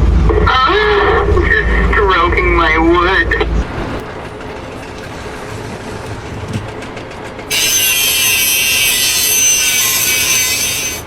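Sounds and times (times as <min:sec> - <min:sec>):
power tool cutting wood: 0:07.5 - 0:11.0.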